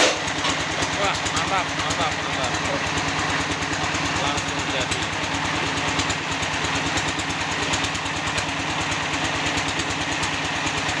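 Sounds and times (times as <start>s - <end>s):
block press machine humming: 0.0s - 8.0s.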